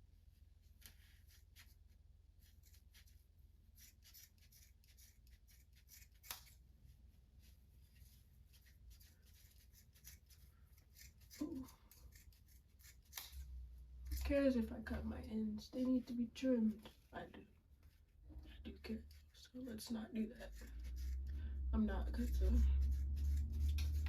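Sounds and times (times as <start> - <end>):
scissors snipping hair: 3.8 - 6.6, 8.5 - 15.0, 18.8 - 24.0.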